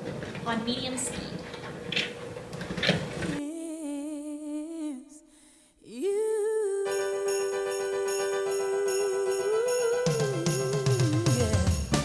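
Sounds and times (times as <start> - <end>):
woman singing pop song: 3.4 - 12.0.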